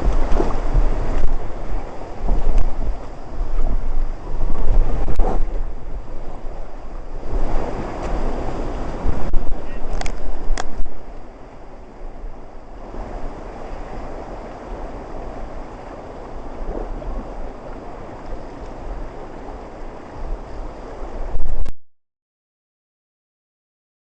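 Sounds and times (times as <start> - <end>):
river water rushing: 0.0 - 4.3, 6.4 - 21.2
wind buffeting microphone: 0.0 - 21.7.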